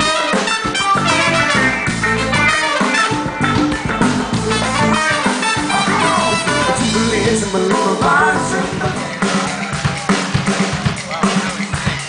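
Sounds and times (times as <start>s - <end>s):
lead melody bending in pitch: 0.0s - 9.6s
drums: 0.0s - 12.0s
guitar: 0.0s - 12.0s.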